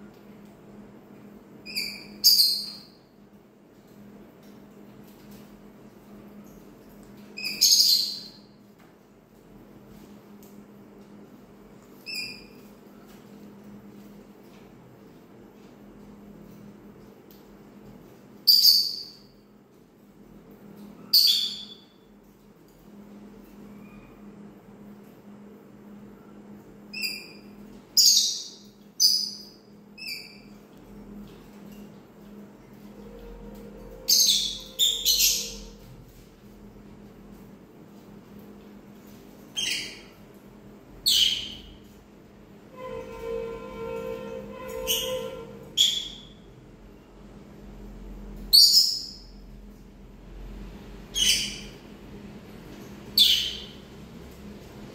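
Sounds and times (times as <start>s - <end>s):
faint low hum: 19.2s - 54.9s
bird harsh screeches: 42.8s - 46.4s.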